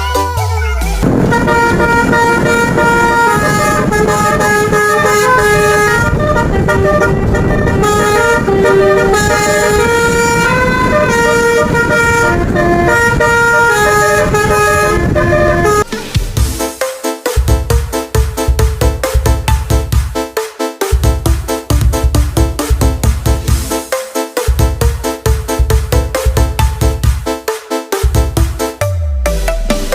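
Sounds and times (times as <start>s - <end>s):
steady engine rumble: 0.0s - 16.8s, 17.4s - 20.3s, 20.9s - 23.9s, 24.5s - 27.4s
air horn melody: 1.0s - 15.9s.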